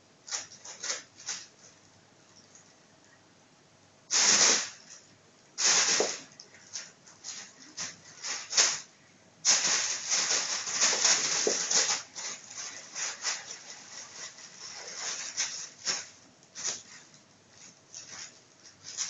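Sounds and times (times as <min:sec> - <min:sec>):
plastic bag crinkling: 0:00.2 - 0:01.8, 0:05.6 - 0:19.0.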